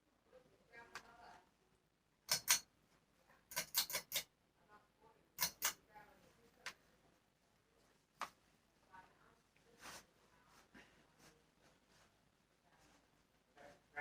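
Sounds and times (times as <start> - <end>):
sharp clicks: 5.4 - 5.8.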